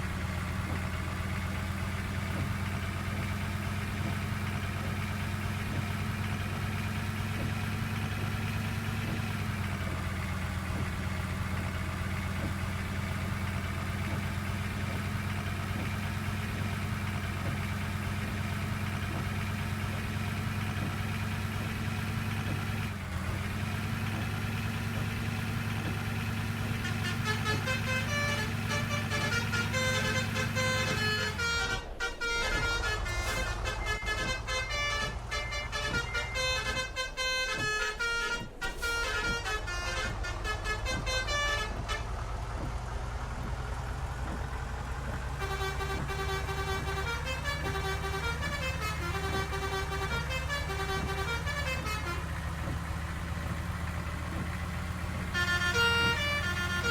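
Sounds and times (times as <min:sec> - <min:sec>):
bus engine idling: 0:00.0 - 0:56.9
multi-tone musical horn: 0:23.7 - 0:42.8, 0:45.3 - 0:56.9.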